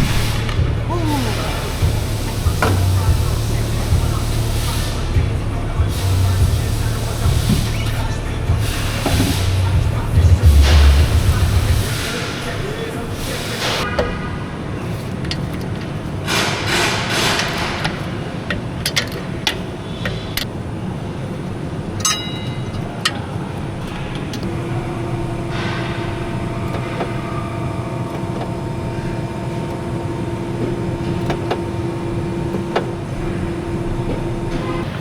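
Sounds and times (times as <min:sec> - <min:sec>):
hiss-like burst: 0:00.0 - 0:13.8
steady mechanical hum: 0:00.0 - 0:35.0.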